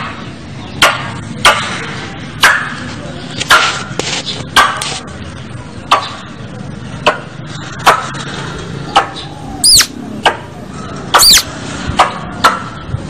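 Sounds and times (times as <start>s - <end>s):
squirrel chip calls: 9.4s - 10.0s, 11.1s - 11.5s
squirrel high squeaks: 9.6s - 10.0s, 11.2s - 11.5s.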